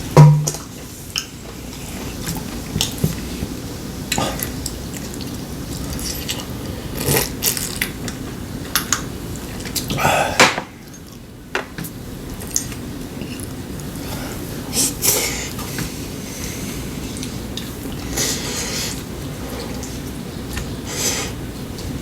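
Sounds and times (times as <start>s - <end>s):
chewing: 4.1s - 10.0s, 12.4s - 14.0s.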